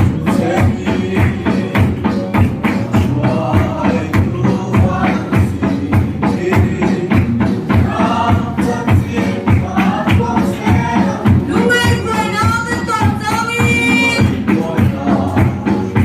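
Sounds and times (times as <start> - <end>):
drum beat with bass and keyboard: 0.0 - 16.0
group singing: 0.0 - 16.0.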